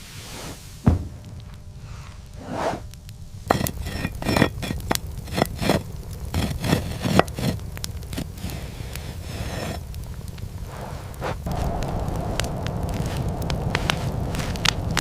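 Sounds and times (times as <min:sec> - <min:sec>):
steady low rumble: 0:00.0 - 0:15.0
hard objects clinking and scraping: 0:03.5 - 0:09.8.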